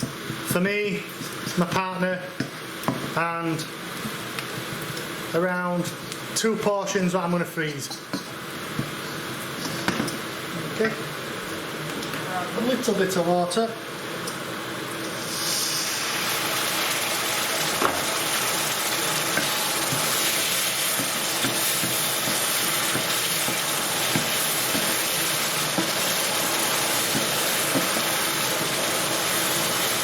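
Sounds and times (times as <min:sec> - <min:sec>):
food sizzling in a hot pan: 0:02.4 - 0:06.4, 0:13.8 - 0:30.0.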